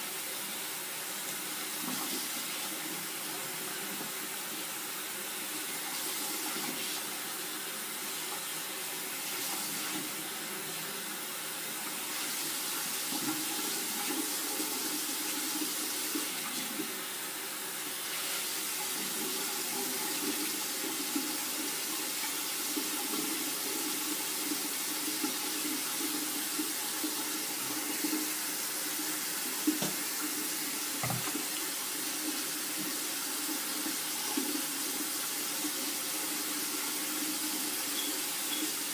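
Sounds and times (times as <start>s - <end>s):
tap water running into sink: 11.8s - 17.0s, 18.0s - 38.9s
small knocks: 31.0s - 31.4s.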